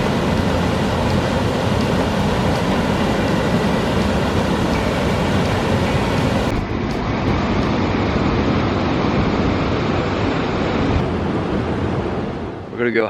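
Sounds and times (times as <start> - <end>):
waterfall roaring: 0.0 - 12.6.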